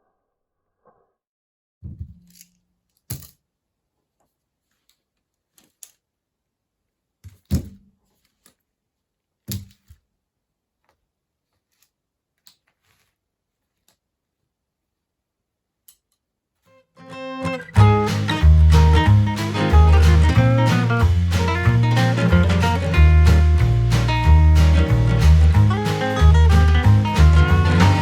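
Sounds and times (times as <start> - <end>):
knocks and clunks of hard objects: 1.8 - 2.4, 7.2 - 8.0.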